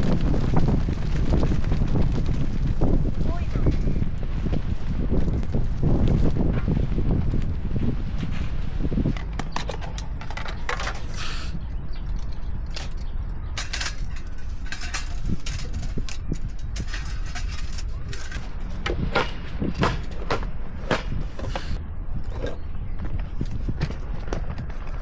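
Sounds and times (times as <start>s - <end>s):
wind on microphone: 0.0s - 25.0s
camping gear clicks and knocks: 9.1s - 22.6s.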